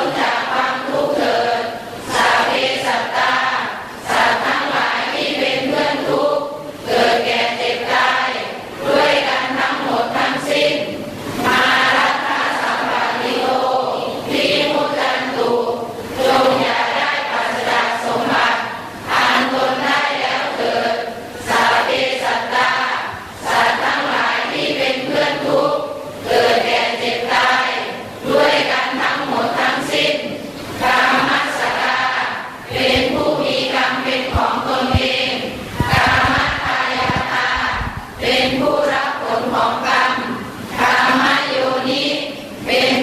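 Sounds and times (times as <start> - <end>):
voices chanting prayers in unison: 0.0 - 43.0
low thumps: 34.2 - 38.3.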